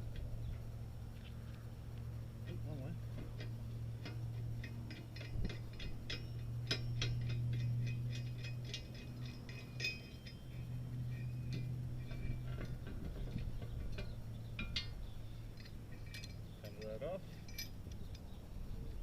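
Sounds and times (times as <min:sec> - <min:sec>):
steady low hum: 0:00.0 - 0:19.0
metallic clicks of bicycle parts: 0:03.2 - 0:18.4.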